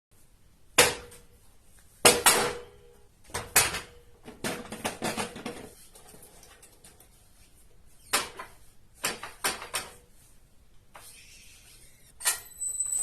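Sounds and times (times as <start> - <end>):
hard objects knocking and clattering: 3.3 - 7.0.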